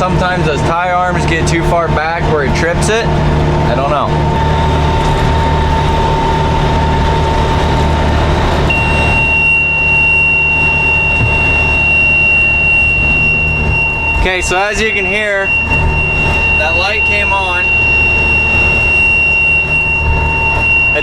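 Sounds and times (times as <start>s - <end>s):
tractor and baler running: 0.0s - 21.0s
continuous high-pitched beep: 8.7s - 21.0s.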